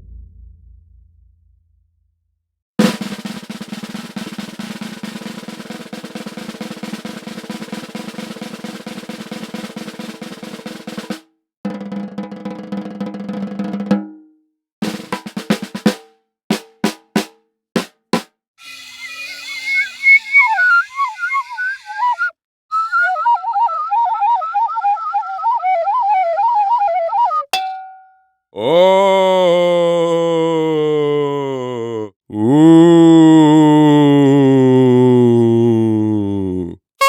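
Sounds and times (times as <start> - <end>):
sharp drum hits: 0.0 - 1.8
snare drum roll: 2.8 - 14.1, 14.8 - 18.3
warbling whistle-like tone: 18.6 - 27.5.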